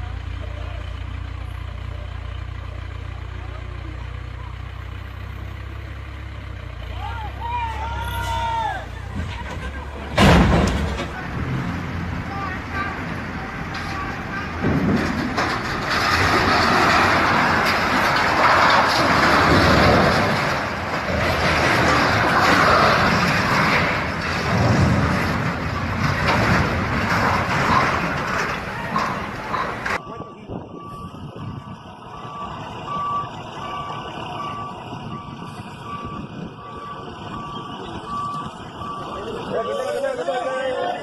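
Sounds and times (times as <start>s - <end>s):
diesel engine rumble: 0.0s - 41.0s
heavy machinery running: 9.0s - 30.1s
reversing alarm beeping: 28.9s - 40.7s.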